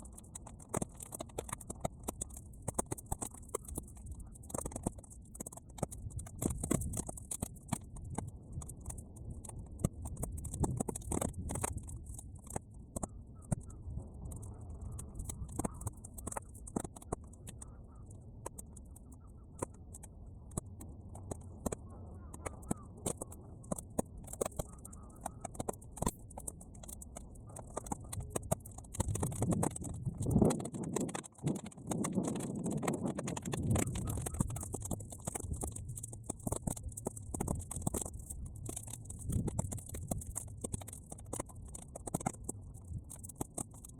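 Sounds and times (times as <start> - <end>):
bonfire crackling and popping: 0.0 - 43.9
fire low rumble: 23.3 - 41.8.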